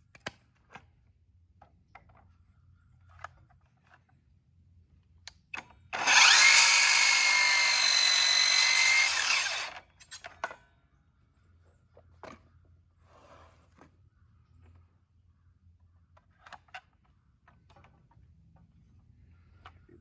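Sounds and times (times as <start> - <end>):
power drill whining: 6.0 - 10.2.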